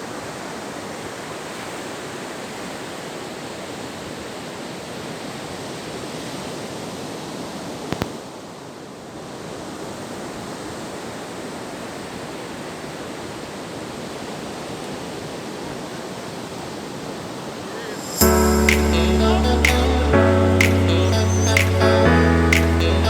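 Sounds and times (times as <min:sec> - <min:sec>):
ocean surf breaking: 0:17.2 - 0:23.0.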